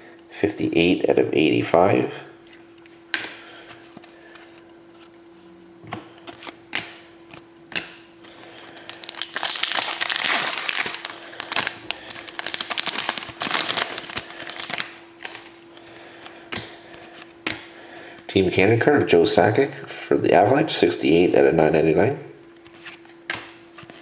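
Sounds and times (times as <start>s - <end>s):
wrapper crinkling: 8.3s - 15.6s.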